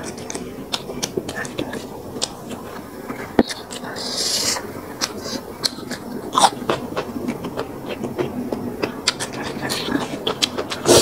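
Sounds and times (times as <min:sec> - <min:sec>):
chewing with mouth clicks: 0:00.0 - 0:11.0.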